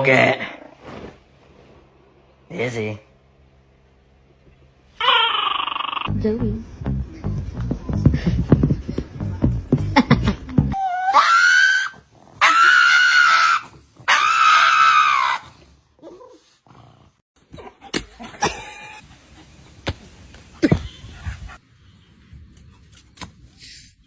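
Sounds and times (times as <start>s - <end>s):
animal crying high-pitched: 5.0s - 6.1s, 10.8s - 15.5s.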